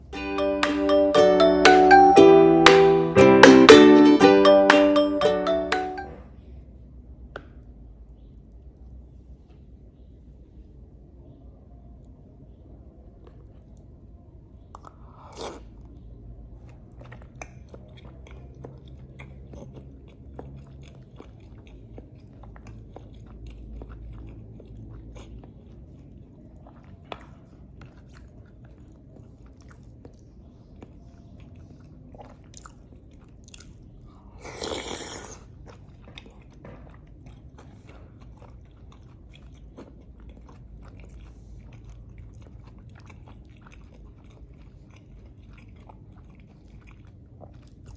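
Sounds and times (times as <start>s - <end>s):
person chewing food: 16.7s - 47.9s.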